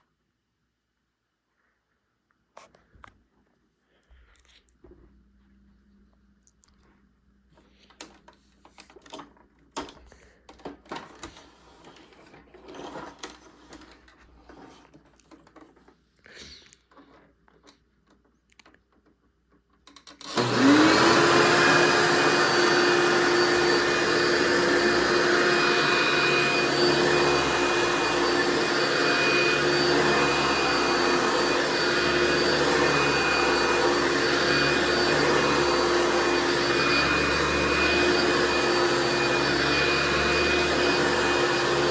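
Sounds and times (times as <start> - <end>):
vacuum cleaner motor whine: 20.2 - 41.9.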